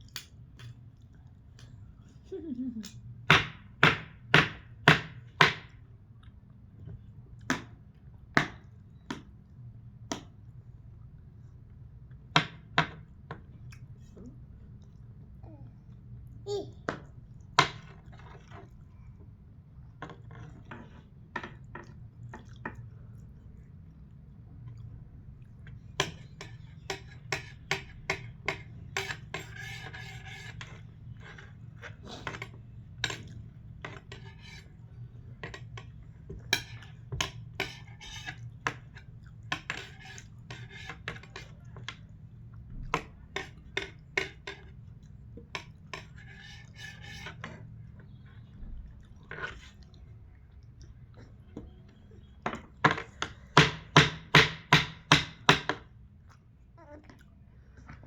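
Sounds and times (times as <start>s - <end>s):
chewing: 22.3s - 25.6s.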